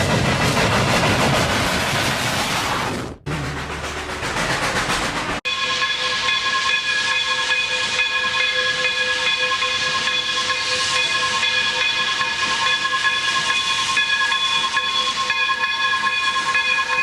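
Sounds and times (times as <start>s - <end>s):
steam locomotive whistle: 5.5s - 17.0s
rushing steam hiss: 6.0s - 17.0s.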